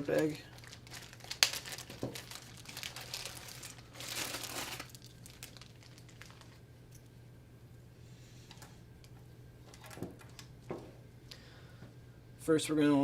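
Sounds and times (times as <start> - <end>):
plastic bag crinkling: 0.0 - 6.6.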